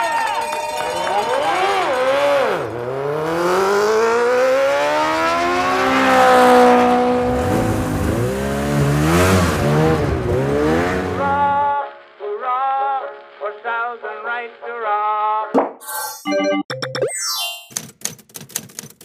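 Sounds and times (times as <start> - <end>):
vehicle engine revving: 1.1 - 11.7.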